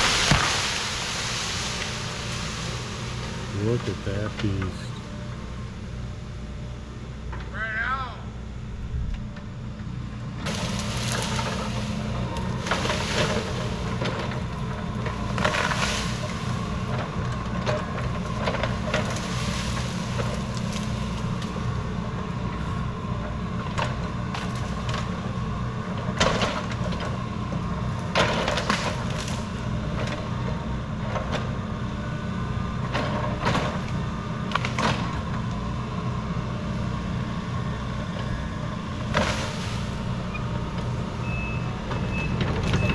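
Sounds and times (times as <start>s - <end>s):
branches cracking and breaking: 0.0s - 3.5s, 10.4s - 21.7s, 33.3s - 35.4s, 39.0s - 41.0s
heavy machine engine running: 0.0s - 42.9s.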